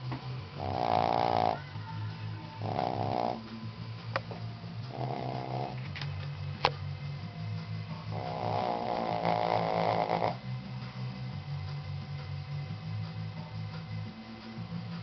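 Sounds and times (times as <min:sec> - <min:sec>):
dog snoring: 0:00.5 - 0:01.8, 0:02.5 - 0:03.6, 0:04.8 - 0:06.0, 0:08.0 - 0:10.5.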